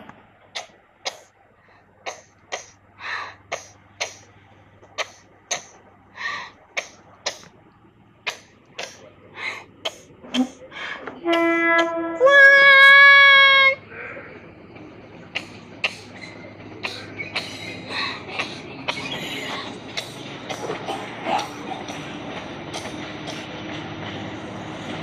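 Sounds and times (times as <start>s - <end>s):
railcar engine humming: 0.0s - 25.0s
train horn: 11.1s - 13.8s.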